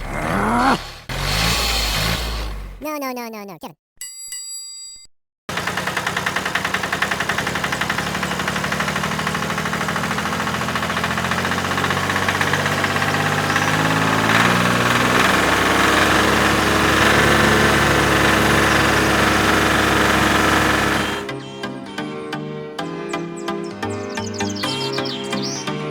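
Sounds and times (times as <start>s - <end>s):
small engine running: 0.0s - 2.8s, 5.5s - 21.3s.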